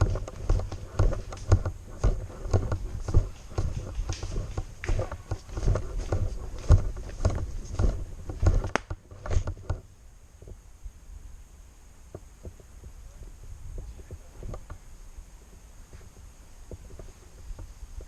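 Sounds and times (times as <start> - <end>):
heavy footsteps: 0.0 - 9.8.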